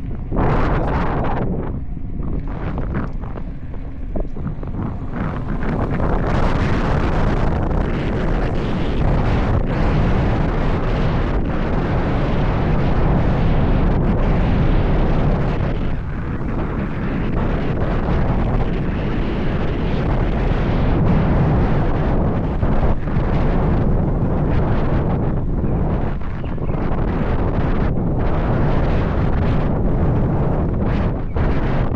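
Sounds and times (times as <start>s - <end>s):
wind buffeting microphone: 0.0s - 31.9s.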